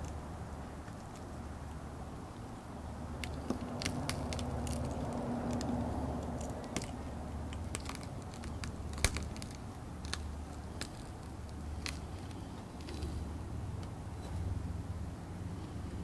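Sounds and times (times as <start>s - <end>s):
screen glass cracking and snapping: 6.4s - 12.1s.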